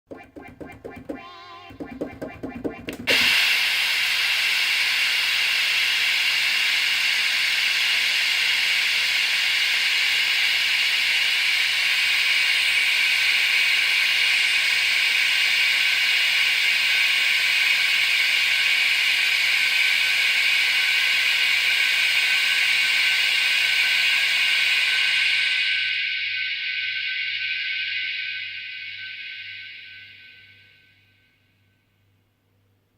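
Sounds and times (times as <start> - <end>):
short synthesizer notes: 0.1 - 3.5.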